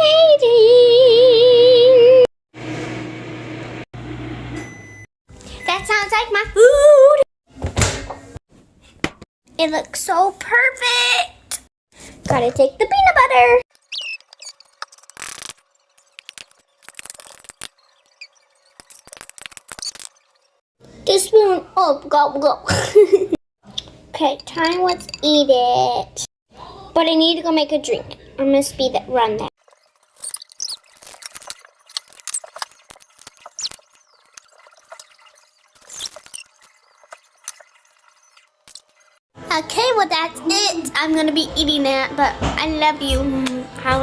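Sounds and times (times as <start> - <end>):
spoon scraping in jar: 23.7 - 25.4
liquid poured into a cup: 29.6 - 39.2.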